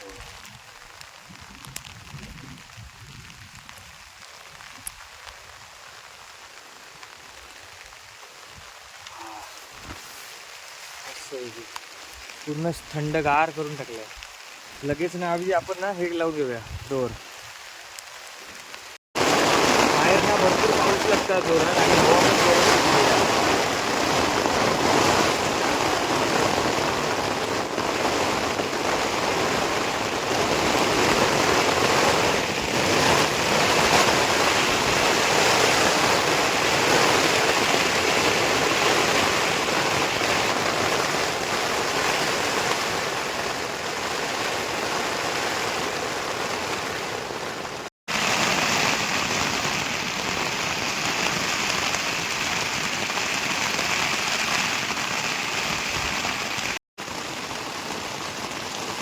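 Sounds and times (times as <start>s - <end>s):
strong wind: 0.0s - 4.8s, 16.6s - 17.3s, 19.2s - 52.1s
heavy rain on a tent: 0.0s - 59.0s.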